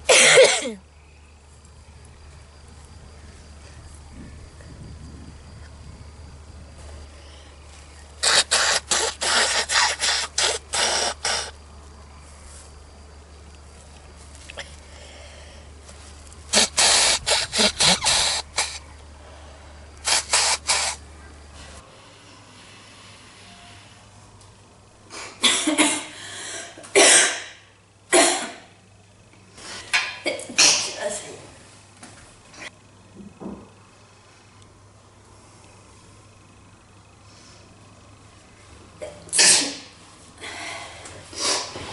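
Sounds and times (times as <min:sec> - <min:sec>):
girl sneezing: 0:00.1 - 0:00.8, 0:27.0 - 0:27.6, 0:30.5 - 0:31.2, 0:39.3 - 0:39.9
person blowing nose: 0:08.2 - 0:11.6, 0:16.5 - 0:18.8, 0:20.0 - 0:21.0.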